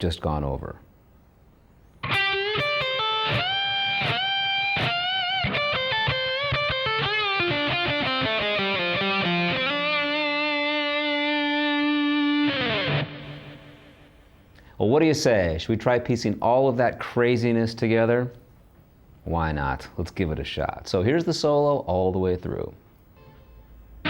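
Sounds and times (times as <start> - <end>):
electric guitar lead: 2.0 - 14.4.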